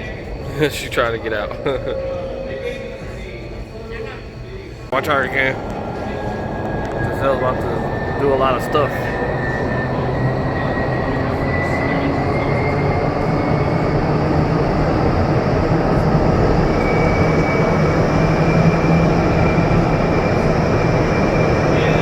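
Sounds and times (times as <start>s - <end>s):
rush of air and fan rumble: 4.5s - 22.0s
faint high whistle: 5.1s - 14.1s, 15.9s - 22.0s.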